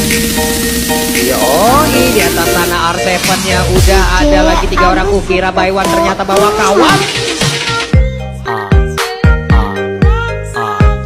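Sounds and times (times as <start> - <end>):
electronic hip-hop beat: 1.1 - 9.7
deep bass kicks dropping in pitch: 3.5 - 6.3.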